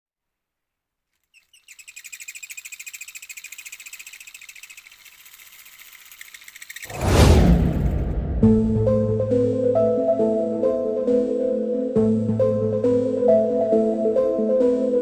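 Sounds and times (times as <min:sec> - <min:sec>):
high-pitched chirping: 0:01.2 - 0:06.9.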